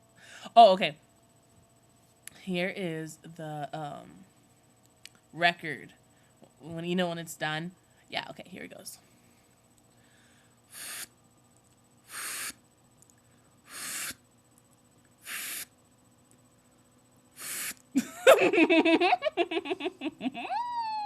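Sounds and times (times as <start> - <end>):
girl making breathy hisses: 10.7 - 11.1, 12.1 - 12.6, 13.7 - 14.2, 15.2 - 15.7, 17.4 - 17.8
girl making warbling voiced sound: 20.4 - 21.0.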